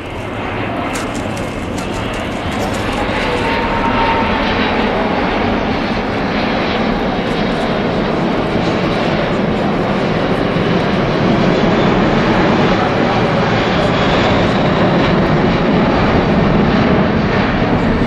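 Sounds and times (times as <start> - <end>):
jet engines rumbling: 0.0 - 18.0.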